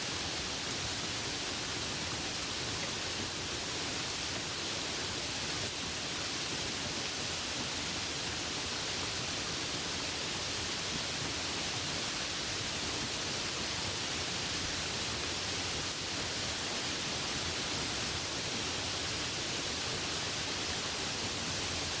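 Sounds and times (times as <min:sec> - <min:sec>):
light rain falling: 0:00.0 - 0:22.0.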